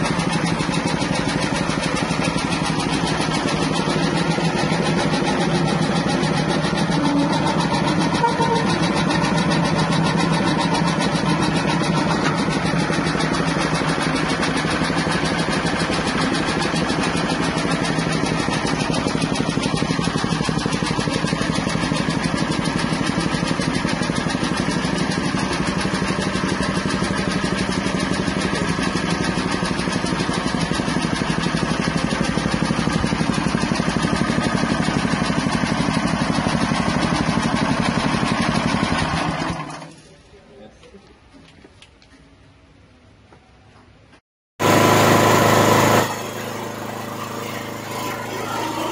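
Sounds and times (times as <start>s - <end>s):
machine droning: 44.6s - 48.9s.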